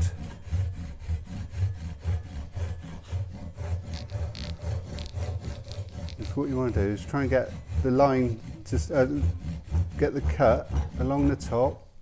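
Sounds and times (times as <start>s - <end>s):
hand saw rasping through wood: 0.0s - 12.0s.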